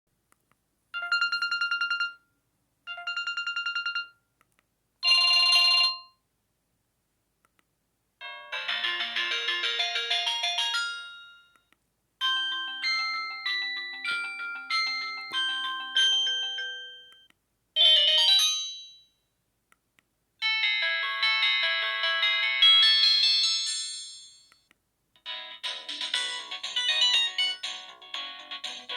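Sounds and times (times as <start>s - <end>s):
mobile phone ringtone: 1.0s - 2.3s, 2.9s - 4.2s, 5.0s - 6.2s, 8.2s - 19.1s, 20.4s - 24.5s, 25.2s - 28.9s
short ringtone jingle: 12.2s - 19.1s.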